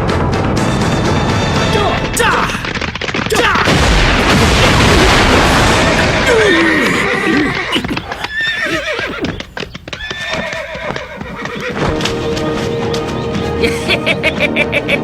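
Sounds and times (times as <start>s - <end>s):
hooves clip-clopping: 0.8s - 4.3s, 5.8s - 15.0s
horses whinnying: 5.7s - 12.7s.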